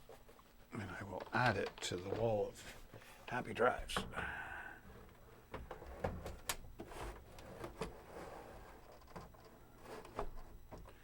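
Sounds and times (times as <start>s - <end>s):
light clicks and knocks of handling: 0.3s - 4.1s.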